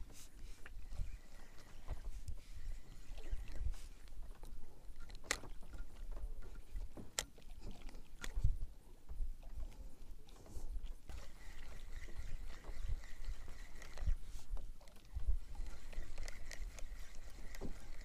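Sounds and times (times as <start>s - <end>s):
boat handling bumps and rumbling: 3.6s - 11.1s.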